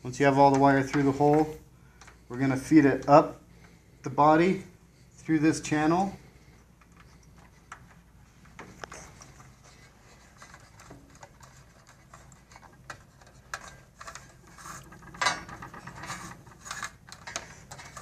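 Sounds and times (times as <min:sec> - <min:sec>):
wire scraping in plastic channel: 0:08.5 - 0:18.0.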